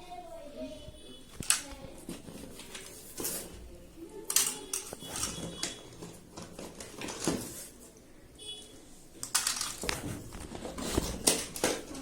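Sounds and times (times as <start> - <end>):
plastic toys clattering: 1.3 - 7.7, 9.2 - 12.0.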